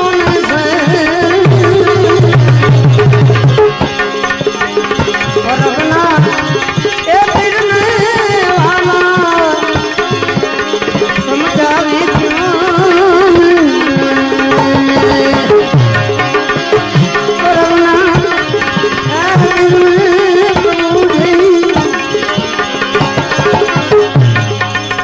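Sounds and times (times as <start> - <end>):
melodic instrument with sliding notes: 0.0 - 25.0
tabla rhythm: 0.0 - 25.0.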